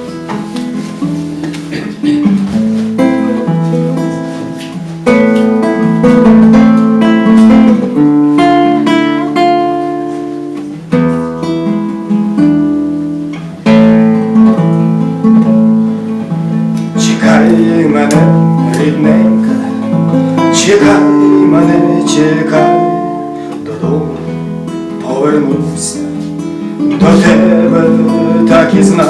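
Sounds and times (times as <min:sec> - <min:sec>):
acoustic guitar strumming: 0:00.0 - 0:29.0.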